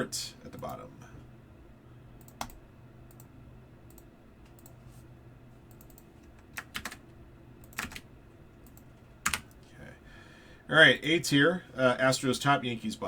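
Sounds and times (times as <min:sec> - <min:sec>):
keyboard and mouse clicks: 0:02.2 - 0:03.3, 0:05.7 - 0:07.0, 0:08.6 - 0:09.6.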